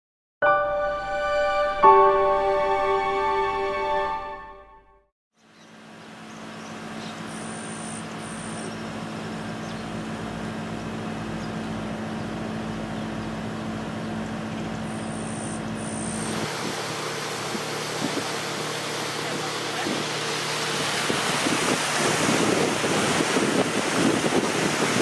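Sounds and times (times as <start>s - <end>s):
motor drone: 11.1s - 25.0s.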